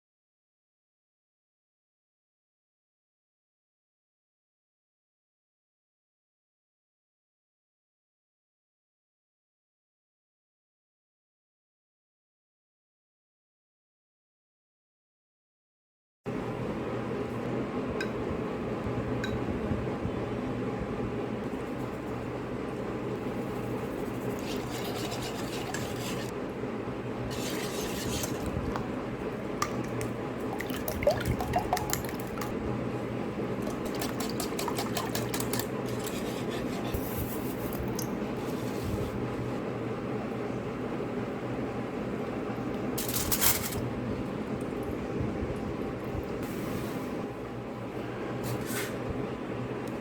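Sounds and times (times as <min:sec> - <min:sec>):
utensils clinking on dishes: 0:33.8 - 0:36.9, 0:43.0 - 0:43.8.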